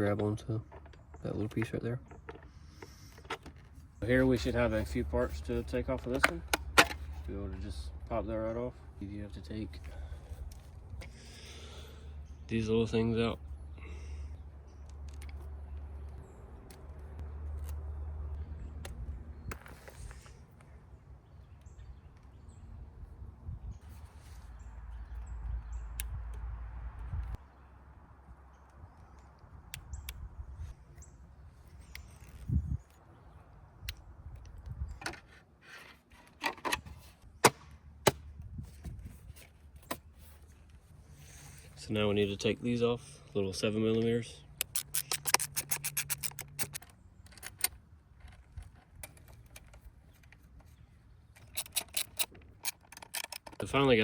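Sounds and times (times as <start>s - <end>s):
sharp clicks and light knocks: 43.9s - 54.0s.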